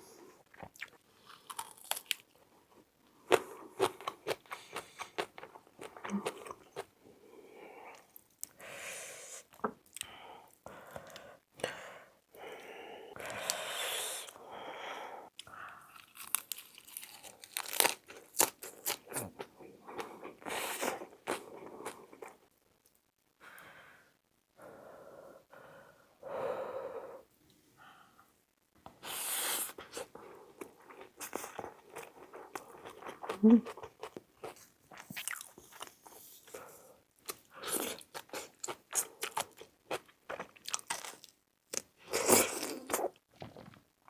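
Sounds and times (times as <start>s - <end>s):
chewing with crunching: 29.9s - 36.2s.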